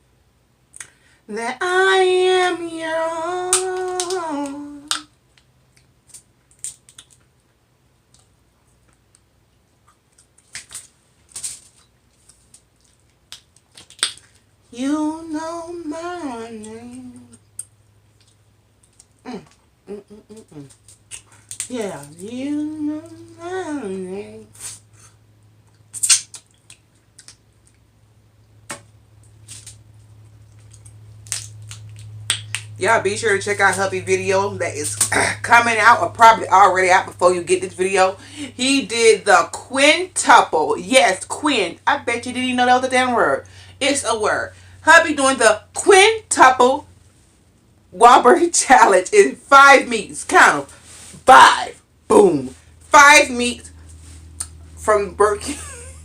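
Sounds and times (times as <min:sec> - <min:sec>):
faint low hum: 0:00.0 - 0:56.0
chewing clicks and smacks: 0:05.4 - 0:10.8, 0:12.3 - 0:14.4, 0:17.6 - 0:19.2, 0:25.7 - 0:27.8, 0:30.5 - 0:32.7.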